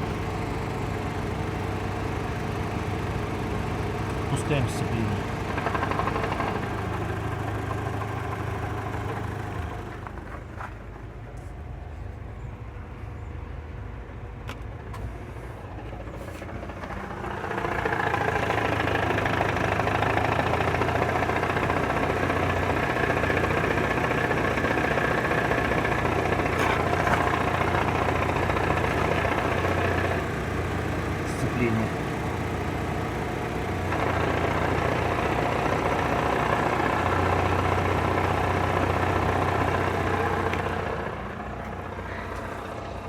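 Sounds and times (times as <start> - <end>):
car engine idling: 0.0 - 43.0.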